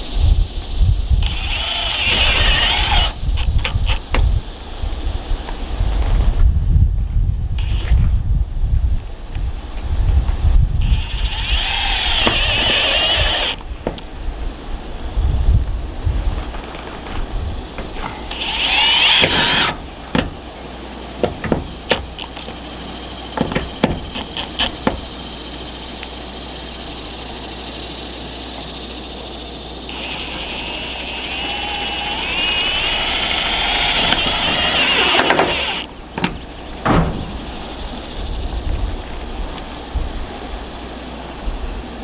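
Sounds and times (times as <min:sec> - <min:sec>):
power drill whining: 0:01.2 - 0:04.2, 0:07.6 - 0:08.1, 0:10.8 - 0:14.1, 0:17.8 - 0:20.6, 0:23.4 - 0:26.1, 0:29.9 - 0:36.7
screws knocking into metal: 0:17.8 - 0:20.5.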